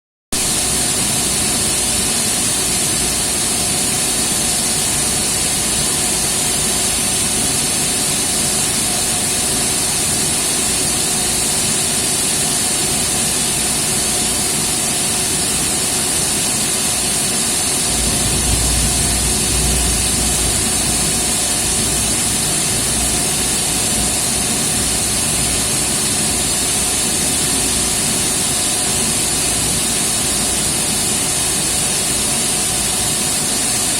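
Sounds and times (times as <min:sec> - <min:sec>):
deep rumble: 0:17.8 - 0:24.2
electric motor growling: 0:17.8 - 0:25.6.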